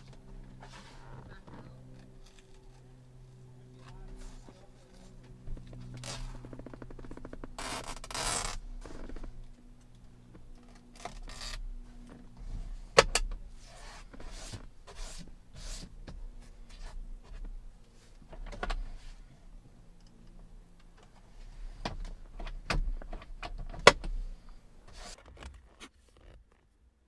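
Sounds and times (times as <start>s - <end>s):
hook-and-loop fastener ripping: 5.8s - 9.2s, 10.6s - 11.6s.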